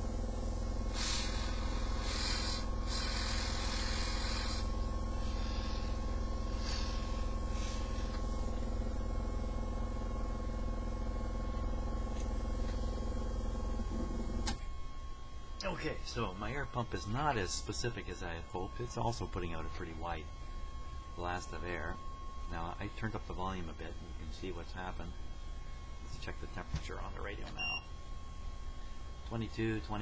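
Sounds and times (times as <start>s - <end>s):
electric air pump humming: 0.0s - 30.0s
air hissing: 0.4s - 8.6s.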